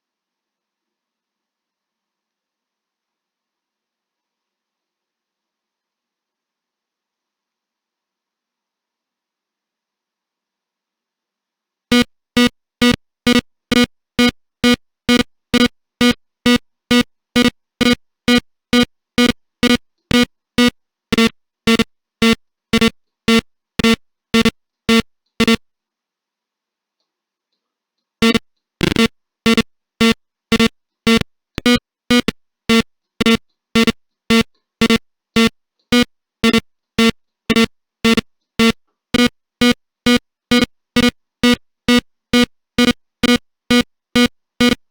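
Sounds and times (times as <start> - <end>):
alarm clock buzzer beeping: 11.9 - 25.6, 28.2 - 44.8.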